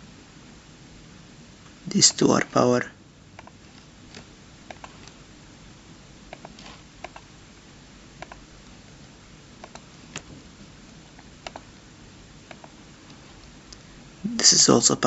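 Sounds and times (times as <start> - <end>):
faint room hiss: 0.0 - 15.0
computer mouse clicking: 3.4 - 5.2, 6.3 - 7.3, 8.2 - 8.5, 9.6 - 10.3, 10.9 - 11.7, 12.5 - 13.5.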